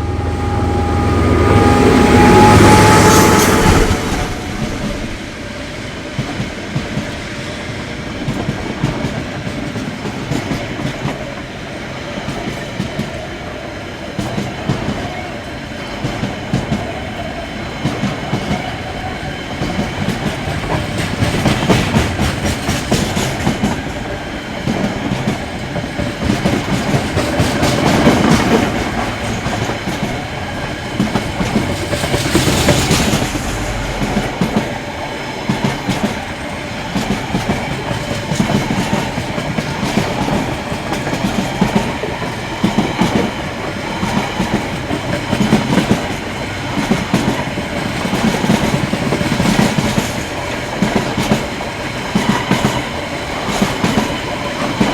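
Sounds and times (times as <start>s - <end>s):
freight train rumble: 0.0s - 54.9s
train wheels clacking over rail joints: 16.0s - 54.9s.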